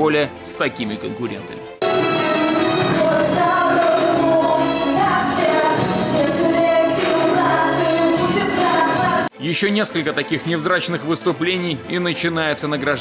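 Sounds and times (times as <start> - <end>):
singing over backing music: 2.4 - 9.3.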